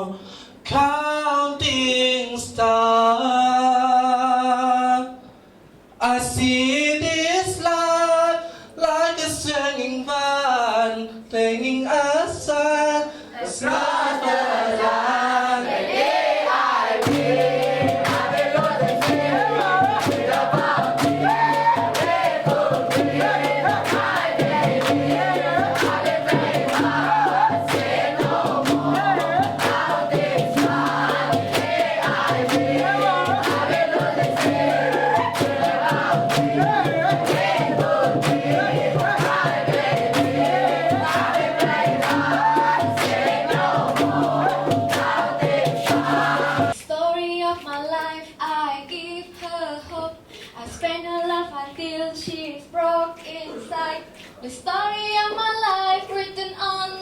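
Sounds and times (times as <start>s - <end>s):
group of voices singing in chorus: 13.4s - 46.8s
music with steady beat and bass: 17.1s - 46.8s.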